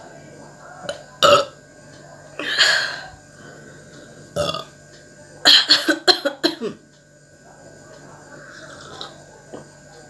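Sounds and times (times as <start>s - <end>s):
woman burping: 1.2s - 1.6s, 2.4s - 3.2s, 4.4s - 4.7s, 5.5s - 6.8s.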